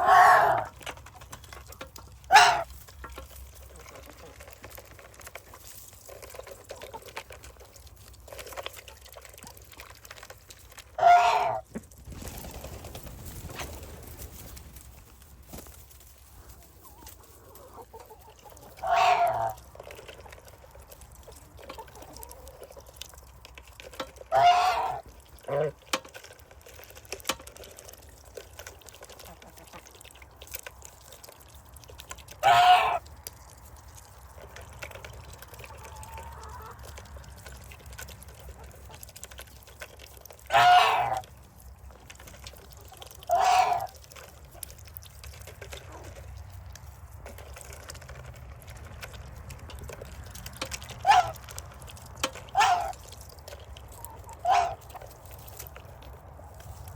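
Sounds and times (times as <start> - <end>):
poultry calling: 0.0 - 0.7, 2.2 - 2.7, 11.0 - 11.6, 16.5 - 19.6, 24.2 - 25.8, 32.4 - 33.1, 40.4 - 41.3, 42.9 - 44.0, 50.9 - 51.4, 52.4 - 53.1, 54.0 - 55.1.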